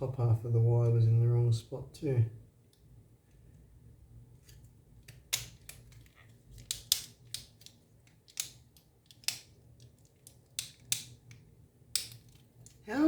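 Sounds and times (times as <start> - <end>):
plastic clicks and snaps: 4.4 - 12.8.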